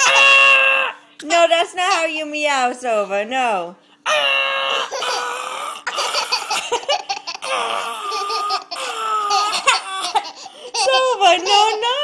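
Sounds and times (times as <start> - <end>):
baby laughing: 0.0 - 0.9, 4.1 - 12.0.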